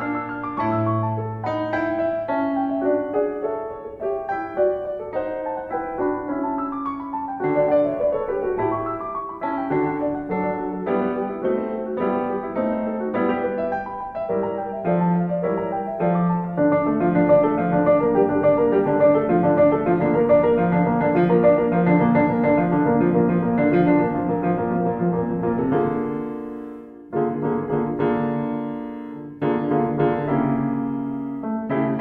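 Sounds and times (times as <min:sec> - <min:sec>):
piano music: 0:00.0 - 0:32.0.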